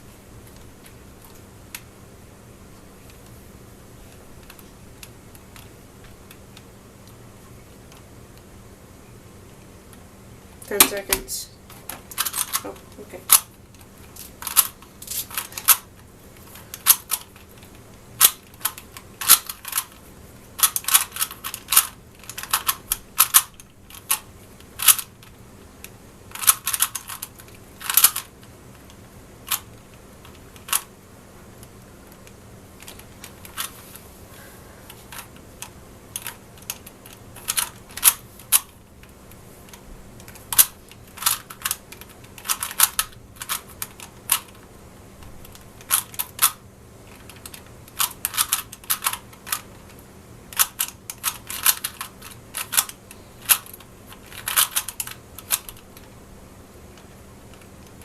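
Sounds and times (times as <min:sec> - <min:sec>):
puzzle cube clicking: 0:12.1 - 0:15.9, 0:20.6 - 0:25.1, 0:26.3 - 0:28.9, 0:39.7 - 0:44.6, 0:45.5 - 0:49.6.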